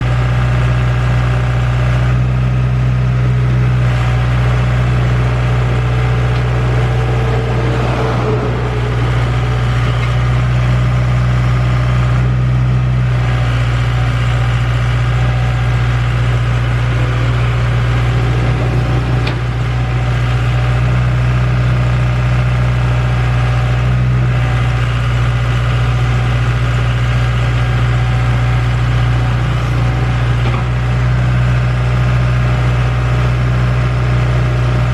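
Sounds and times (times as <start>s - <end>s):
excavator diesel engine humming: 0.0s - 34.9s
noisy rush: 4.0s - 11.7s, 15.7s - 21.2s.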